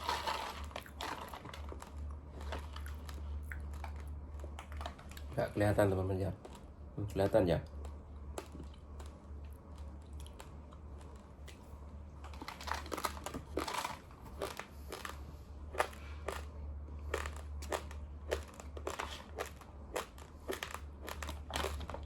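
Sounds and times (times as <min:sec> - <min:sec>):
steady low hum: 0:00.0 - 0:22.0
person crunching dry rice: 0:12.3 - 0:22.0.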